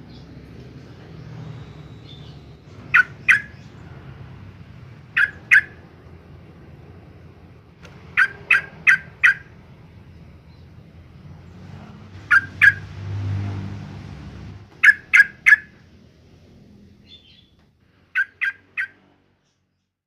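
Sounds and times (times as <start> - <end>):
bird calling in sharp notes: 1.6 - 3.7, 5.1 - 5.8, 8.1 - 9.6, 12.2 - 12.9, 14.7 - 15.8, 18.1 - 19.0.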